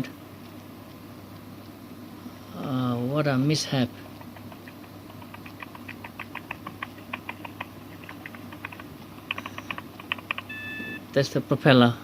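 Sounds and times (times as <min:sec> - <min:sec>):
low steady hum: 0:00.0 - 0:12.0
propeller clicking: 0:04.0 - 0:10.5.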